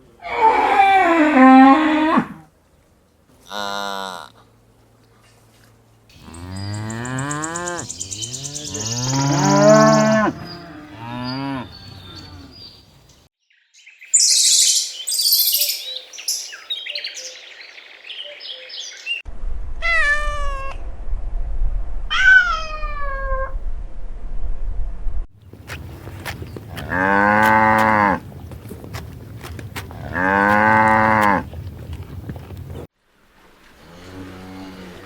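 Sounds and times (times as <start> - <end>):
cow mooing: 6.2 - 12.6, 26.7 - 28.2, 29.9 - 31.5, 33.8 - 35.0
high-pitched chirping: 14.1 - 16.5
cat meowing: 19.8 - 20.8, 22.1 - 23.5.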